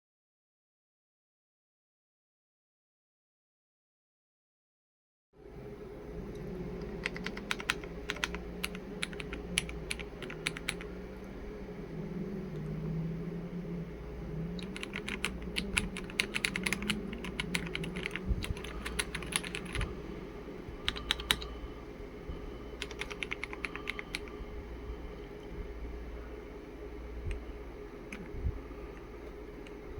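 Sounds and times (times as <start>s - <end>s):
steady low hum: 5.4s - 29.9s
typing on mechanical keyboard: 6.8s - 10.9s, 14.6s - 19.9s, 20.8s - 21.5s, 22.8s - 24.3s.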